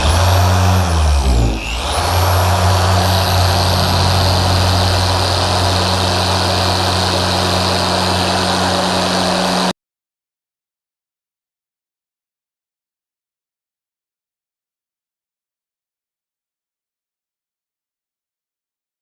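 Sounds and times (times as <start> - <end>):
polisher motor humming and whining: 0.0 - 9.7.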